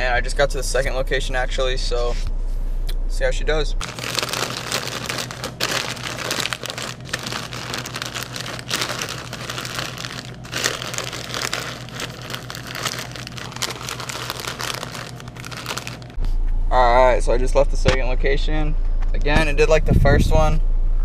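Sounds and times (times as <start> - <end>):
plastic packaging crinkling: 3.8 - 16.2.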